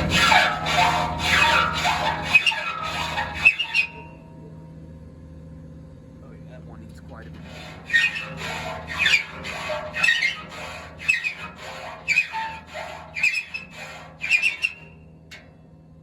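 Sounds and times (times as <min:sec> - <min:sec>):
hand file rasping on saw tooth: 0:00.0 - 0:04.1, 0:07.4 - 0:14.8.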